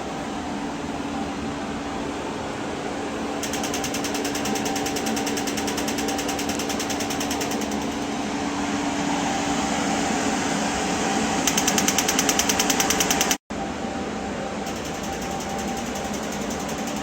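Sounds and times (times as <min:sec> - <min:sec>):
cooling fan hum: 0:00.0 - 0:17.0
rapid even ticking: 0:03.4 - 0:08.2, 0:11.4 - 0:13.4, 0:14.7 - 0:17.0.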